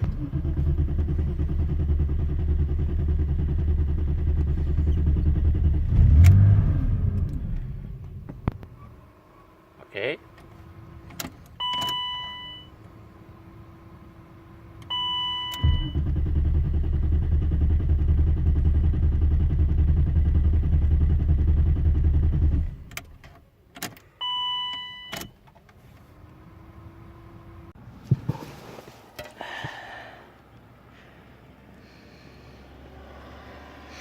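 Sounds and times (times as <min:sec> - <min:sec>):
engine cranking on starter: 0:00.0 - 0:06.6, 0:15.5 - 0:22.8
dashboard chime beeping: 0:11.6 - 0:12.7.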